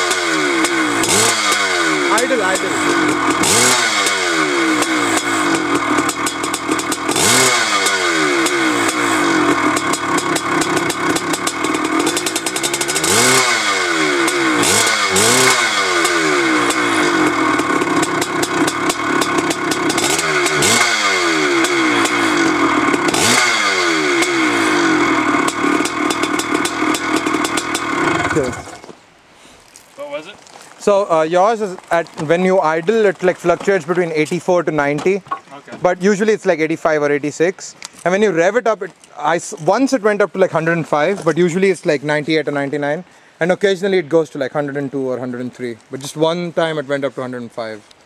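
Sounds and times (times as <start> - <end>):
two-stroke engine idling and revving: 0.0 - 28.8.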